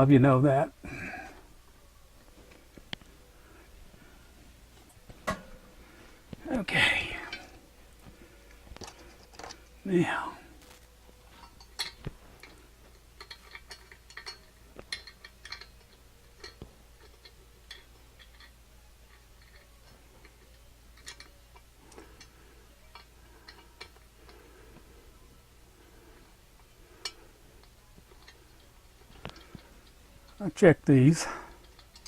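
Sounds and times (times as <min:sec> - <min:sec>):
small metal parts clicking: 0:08.7 - 0:09.8, 0:10.6 - 0:24.4, 0:26.6 - 0:30.5, 0:31.2 - 0:32.0.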